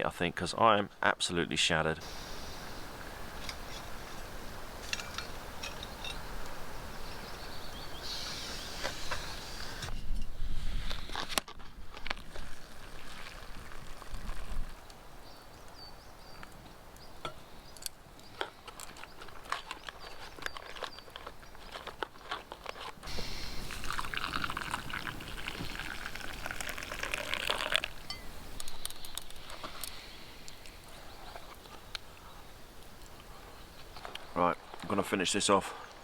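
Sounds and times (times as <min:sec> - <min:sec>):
water pouring: 0:12.3 - 0:14.8, 0:23.1 - 0:28.4.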